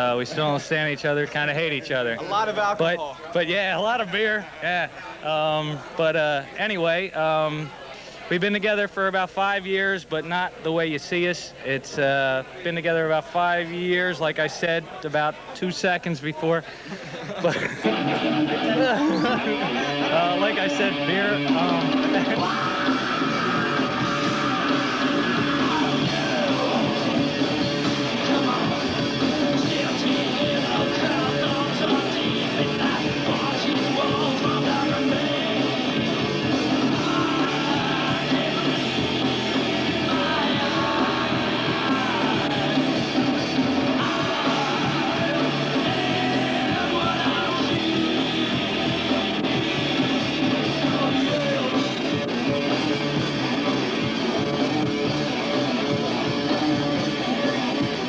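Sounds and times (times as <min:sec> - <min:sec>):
person singing: 0:17.6 - 0:52.8
rock band playing: 0:17.7 - 0:58.0.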